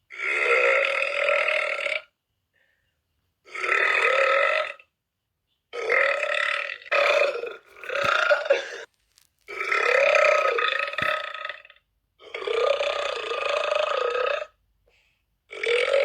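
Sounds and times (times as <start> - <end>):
person burping: 0.1 - 2.1, 3.5 - 4.8, 5.8 - 8.9, 9.5 - 14.5.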